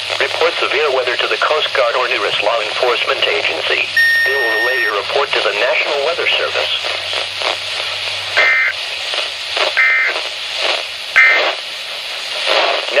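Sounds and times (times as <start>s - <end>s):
radio reception hiss: 0.0s - 13.0s
digital data tone bursts: 4.0s - 5.0s, 8.4s - 8.8s, 9.8s - 10.2s, 11.2s - 11.6s.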